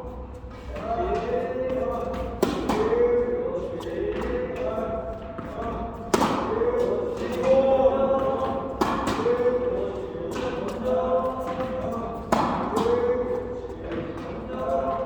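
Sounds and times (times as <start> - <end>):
tennis racket striking ball: 1.7 - 3.1, 6.1 - 7.6, 8.2 - 14.7.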